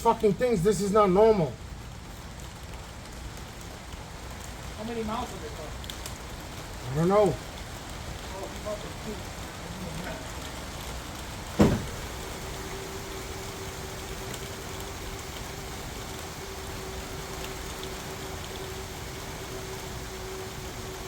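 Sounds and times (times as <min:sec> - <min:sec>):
workshop background hiss: 0:00.0 - 0:02.8, 0:03.6 - 0:21.0
sharp knock: 0:11.6 - 0:12.0
steady hum: 0:11.6 - 0:21.0.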